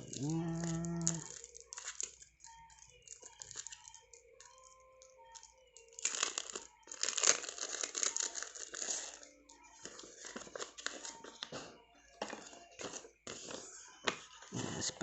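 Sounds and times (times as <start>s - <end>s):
paper crinkling and rustling: 0.0s - 2.2s, 5.4s - 9.2s, 9.8s - 15.0s.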